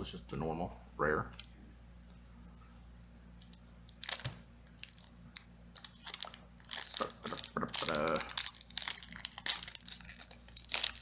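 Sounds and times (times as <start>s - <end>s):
foil wrapper crinkling: 3.4s - 11.0s.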